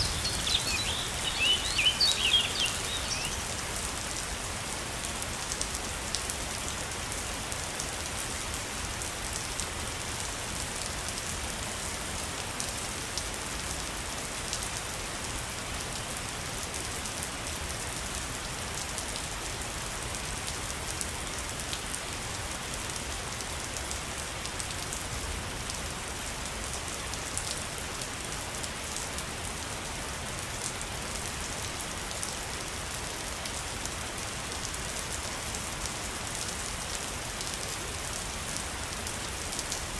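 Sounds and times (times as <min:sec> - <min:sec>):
waterfall rushing: 0:00.0 - 0:03.7.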